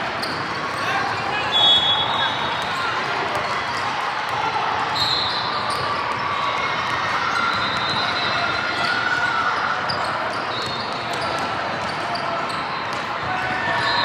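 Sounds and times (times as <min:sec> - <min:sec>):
spectator chatter: 0:00.0 - 0:14.0
sneaker squeaks: 0:00.2 - 0:02.9, 0:05.0 - 0:06.2, 0:07.3 - 0:14.0.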